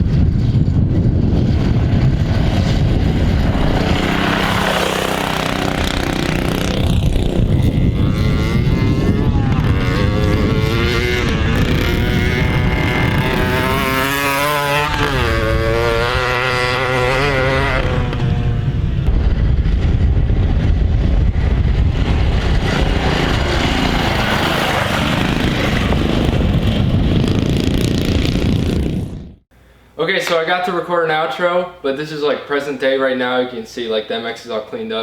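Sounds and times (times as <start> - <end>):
wind and ground noise: 0.0 - 30.5
small mini bike engine revving: 1.4 - 19.1, 21.8 - 29.1.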